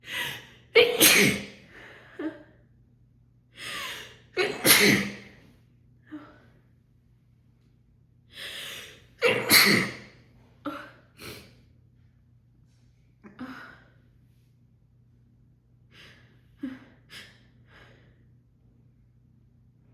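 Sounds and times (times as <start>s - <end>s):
woman sneezing: 0.1s - 1.6s, 3.9s - 5.4s, 9.2s - 10.1s.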